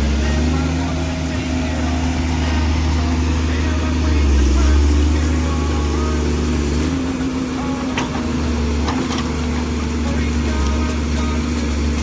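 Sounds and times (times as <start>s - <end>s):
diesel engine humming: 0.0s - 12.0s.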